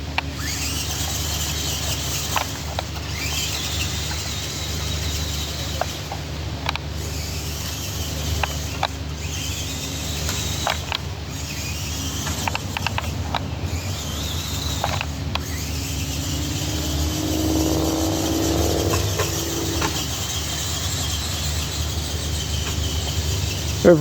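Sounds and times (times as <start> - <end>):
toy car motor whining: 0.0 - 24.0
low hum: 12.3 - 20.7
low droning tone: 12.9 - 20.6.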